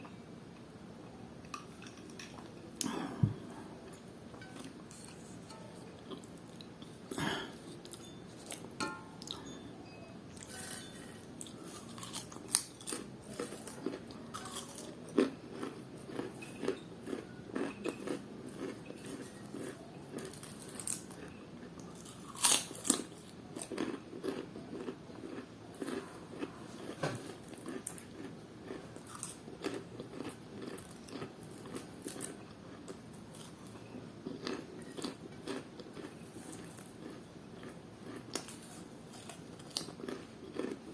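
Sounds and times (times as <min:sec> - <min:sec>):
crunchy snack chewing: 0:10.4 - 0:40.9.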